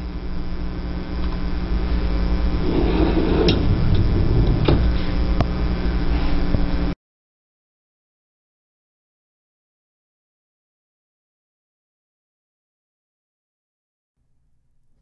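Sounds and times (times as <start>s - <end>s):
steady low hum: 0.0s - 7.0s
wire basket sliding: 2.6s - 5.0s.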